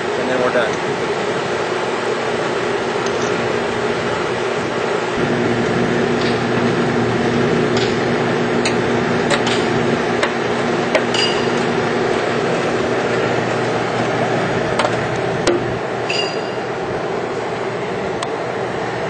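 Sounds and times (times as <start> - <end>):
mechanical hum: 0.0 - 19.0
metal tools clinking: 11.1 - 11.5, 16.1 - 16.6.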